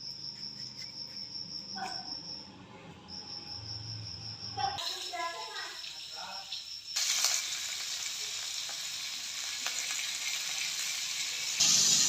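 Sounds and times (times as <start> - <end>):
insect trilling: 0.0 - 2.5, 3.1 - 8.6.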